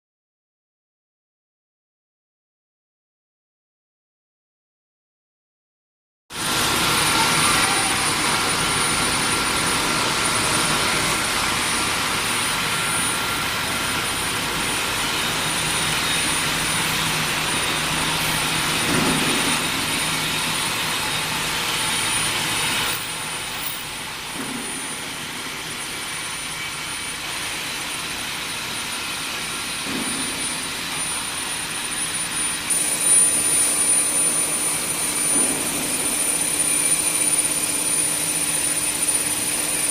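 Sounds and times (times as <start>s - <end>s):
industrial furnace noise: 6.4s - 39.9s
thin high whine: 6.4s - 39.9s.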